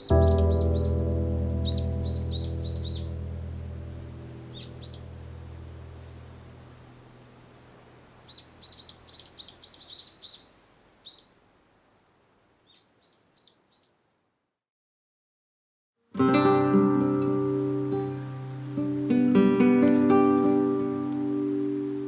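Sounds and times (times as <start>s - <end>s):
bird chirping: 0.0s - 6.6s, 8.2s - 11.4s, 12.6s - 14.0s
faint outdoor background: 0.0s - 14.6s, 16.0s - 22.0s.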